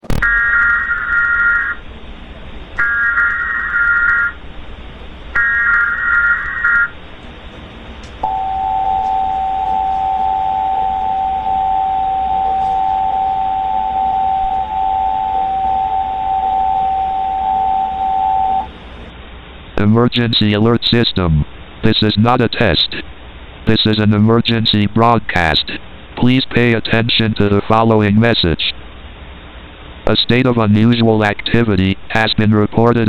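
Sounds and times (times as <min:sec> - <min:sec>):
buzzing data bursts: 0:00.0 - 0:01.8, 0:05.3 - 0:07.0
two-tone attention signal: 0:08.2 - 0:18.7.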